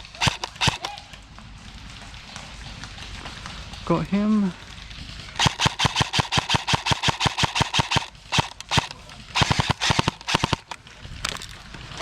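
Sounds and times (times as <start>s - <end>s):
airsoft rifle firing: 0.0s - 1.0s, 5.4s - 11.5s.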